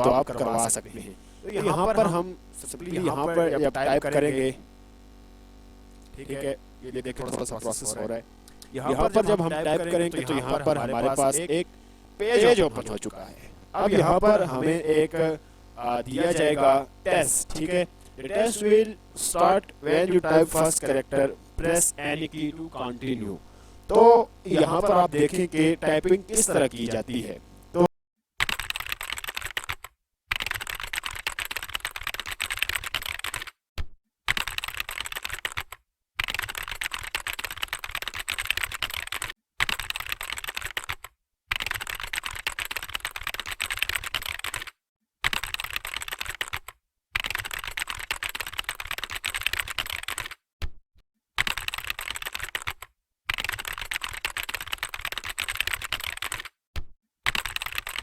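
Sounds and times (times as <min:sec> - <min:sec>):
fast typing on keyboard: 0:28.4 - 0:33.6, 0:34.3 - 0:50.4, 0:51.4 - 0:56.6, 0:57.2 - 0:58.0.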